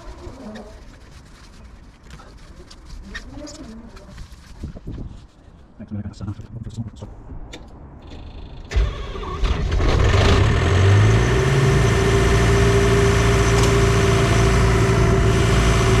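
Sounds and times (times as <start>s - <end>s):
diesel engine starting and running: 8.0s - 16.0s.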